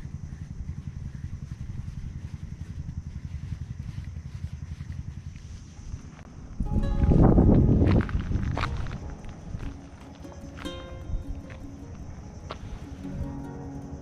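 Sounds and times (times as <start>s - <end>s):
small engine chugging: 0.0s - 6.2s.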